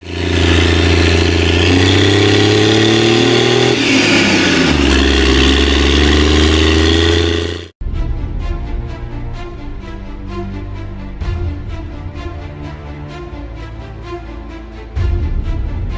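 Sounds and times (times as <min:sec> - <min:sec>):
diesel engine running at high revs: 0:00.0 - 0:07.8
music: 0:07.8 - 0:15.9.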